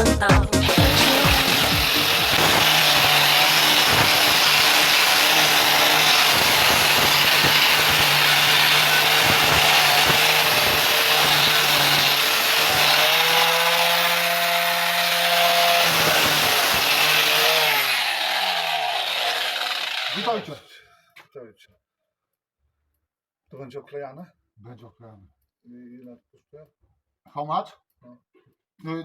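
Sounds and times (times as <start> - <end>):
electric power sander running: 0.6 - 20.5.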